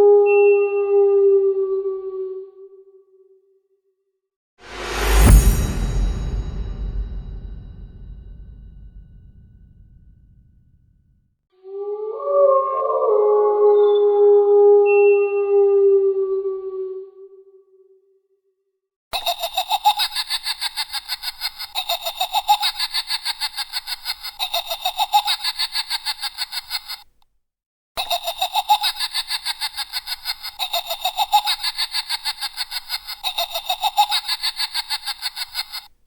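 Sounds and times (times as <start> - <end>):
high-pitched pulsing cackle: 19.2 - 27.0, 28.0 - 35.9.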